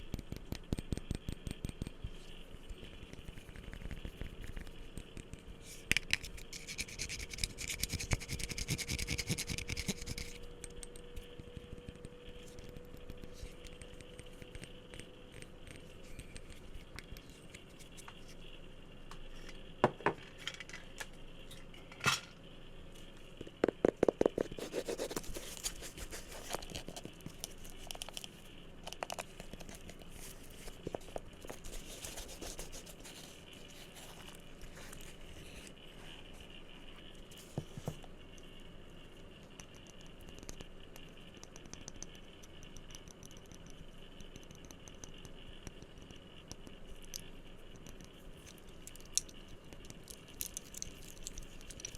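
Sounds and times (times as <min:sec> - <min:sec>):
objects tapped by hand: 0:23.4 - 0:24.6.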